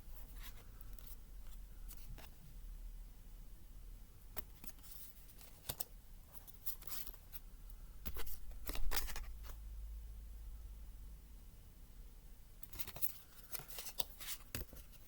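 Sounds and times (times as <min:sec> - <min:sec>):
low steady hum: 0:00.0 - 0:15.0
cards clicking and sliding: 0:04.4 - 0:07.2, 0:08.0 - 0:09.3, 0:12.6 - 0:15.0.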